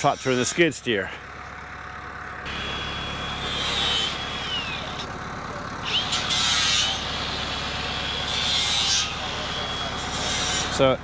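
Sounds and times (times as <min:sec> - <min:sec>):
farm machinery running: 0:00.0 - 0:11.0
high machine whine: 0:02.5 - 0:06.2.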